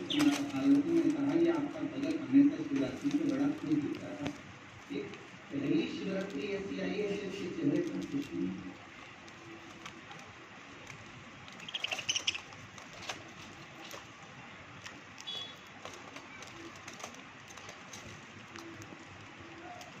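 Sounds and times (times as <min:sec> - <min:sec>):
budgerigars chirping: 0:11.6 - 0:12.5.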